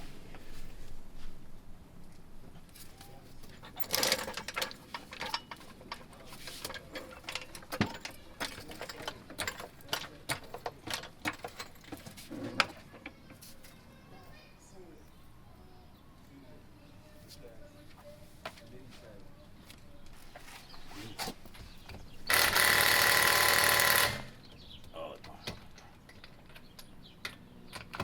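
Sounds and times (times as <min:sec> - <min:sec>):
hand tools clanking against metal: 0:02.8 - 0:13.8, 0:20.3 - 0:28.0.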